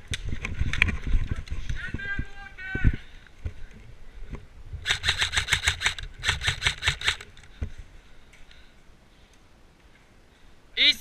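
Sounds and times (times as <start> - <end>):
airsoft gun full-auto bursts: 4.8 - 7.4.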